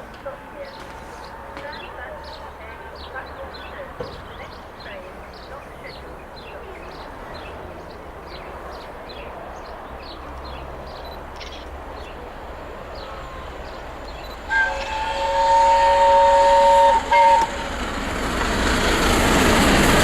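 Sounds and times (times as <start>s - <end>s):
small birds chirping: 0.2s - 14.5s
steam locomotive whistle: 14.5s - 17.8s.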